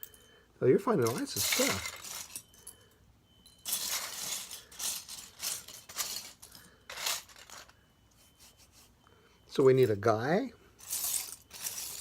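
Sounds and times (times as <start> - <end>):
plastic bricks clattering: 1.0 - 2.4, 3.6 - 7.7.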